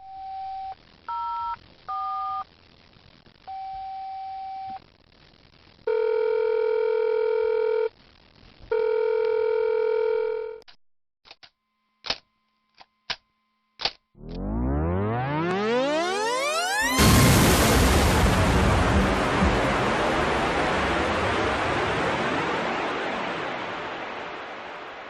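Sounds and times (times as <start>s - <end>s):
phone ringing tones: 5.9s - 7.9s, 8.7s - 10.6s.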